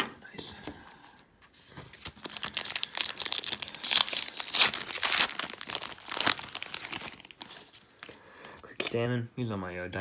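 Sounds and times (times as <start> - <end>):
wrapper tearing and crinkling: 2.0 - 8.2.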